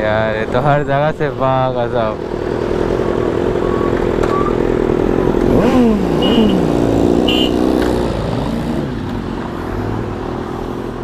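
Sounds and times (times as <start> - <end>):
motorcycle engines in traffic: 0.0 - 11.0
short high beeps: 7.3 - 7.6.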